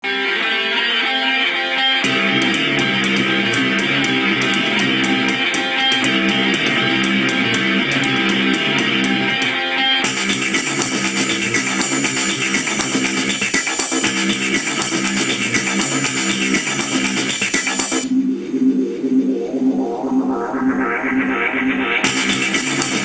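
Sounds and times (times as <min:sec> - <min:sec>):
plucked guitar notes: 0:00.0 - 0:17.4
steady drum beat: 0:02.1 - 0:18.1, 0:22.0 - 0:23.0.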